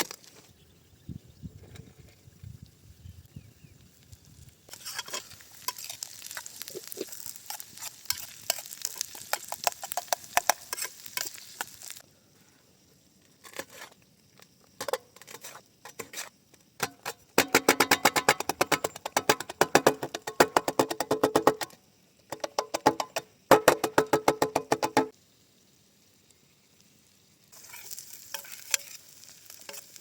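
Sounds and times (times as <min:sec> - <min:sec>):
food sizzling in a pan: 0:02.9 - 0:12.1, 0:24.5 - 0:30.0.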